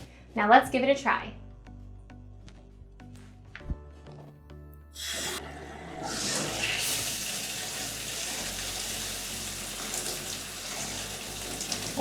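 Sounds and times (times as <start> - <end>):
shower spraying water: 5.0 - 12.0.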